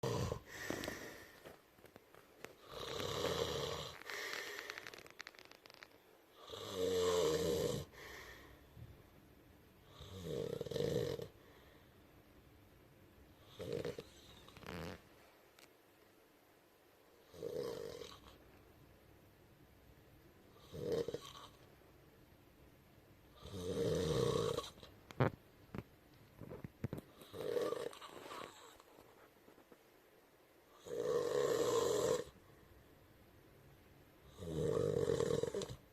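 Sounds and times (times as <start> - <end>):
person snoring: 0.0 - 1.2, 2.6 - 5.3, 6.4 - 8.0, 9.9 - 11.4, 13.4 - 15.0, 17.3 - 18.4, 20.6 - 21.6, 23.4 - 24.9, 27.2 - 28.8, 30.8 - 32.4, 34.3 - 35.8.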